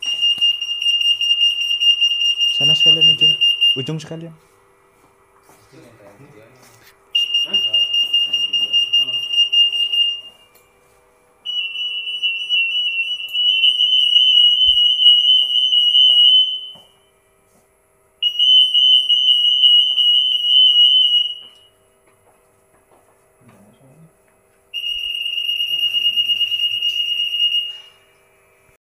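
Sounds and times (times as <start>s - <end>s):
anti-theft gate alarm beeping: 0.0s - 4.2s, 7.1s - 10.7s, 11.4s - 17.2s, 18.2s - 21.7s, 24.7s - 28.2s.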